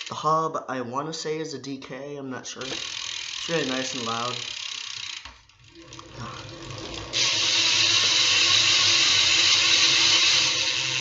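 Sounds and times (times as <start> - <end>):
bicycle hub ratchet clicking: 0.0 - 0.2, 2.6 - 11.0
bicycle wheel whirring buzz: 2.6 - 11.0.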